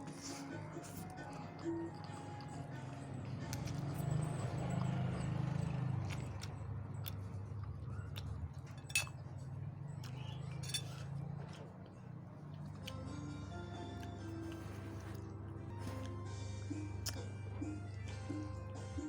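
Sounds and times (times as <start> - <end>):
utensils clinking on dishes: 8.6 - 9.3, 10.0 - 11.7.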